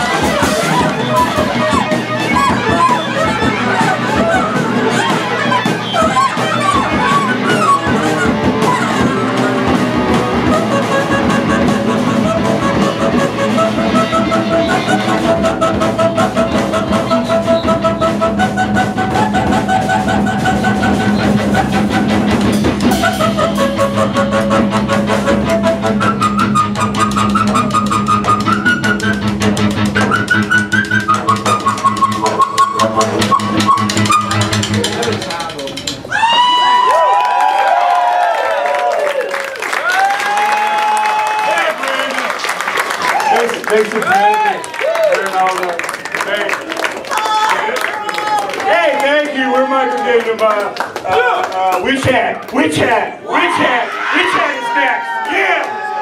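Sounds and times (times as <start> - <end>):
live rock band playing loudly: 0.0 - 36.1.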